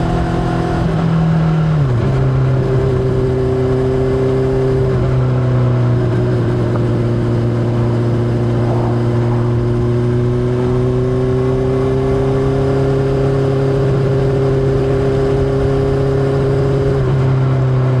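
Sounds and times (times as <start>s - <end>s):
motorcycle engine riding: 0.0s - 18.0s.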